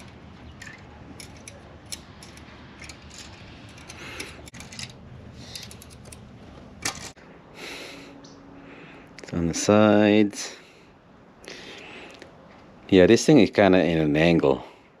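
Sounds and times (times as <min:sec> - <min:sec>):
light metal scraping: 0:00.0 - 0:07.2
small metal clicks: 0:00.0 - 0:07.2.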